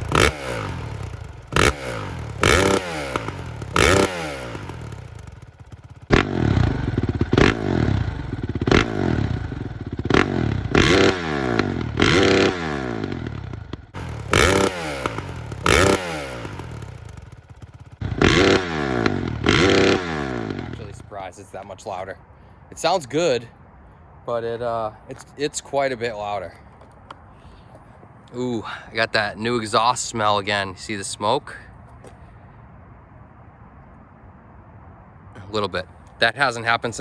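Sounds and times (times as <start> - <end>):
motorcycle engine revving: 0.0 - 21.3.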